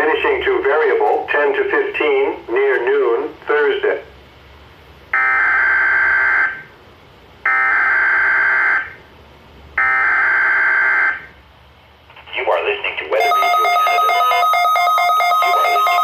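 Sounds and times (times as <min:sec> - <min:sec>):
buzzing digital data tones: 0:13.2 - 0:16.0.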